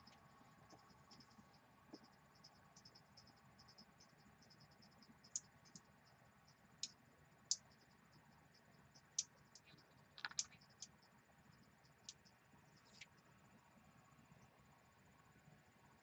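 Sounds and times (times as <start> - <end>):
plastic cables clicking and tapping: 9.2 - 10.9.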